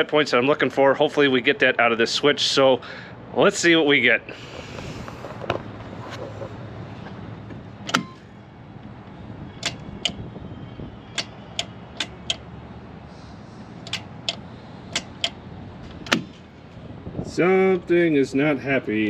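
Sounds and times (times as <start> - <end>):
steady low hum: 0.0 - 19.0
switch and relay clicks: 7.8 - 8.2, 9.6 - 10.3, 11.1 - 12.5, 13.8 - 16.4.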